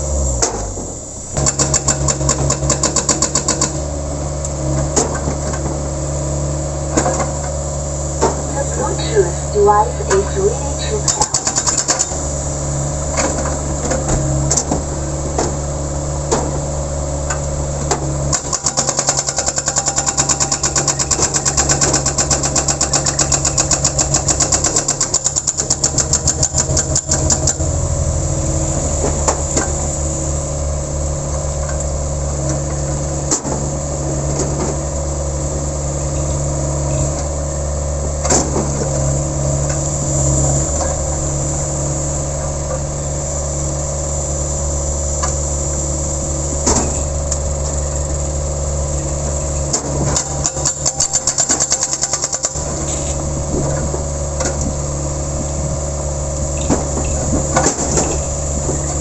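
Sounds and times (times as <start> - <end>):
excavator engine running: 0.0 - 59.0
hydraulic breaker hammering: 1.4 - 3.9, 11.1 - 12.2, 17.3 - 27.6, 49.7 - 52.9.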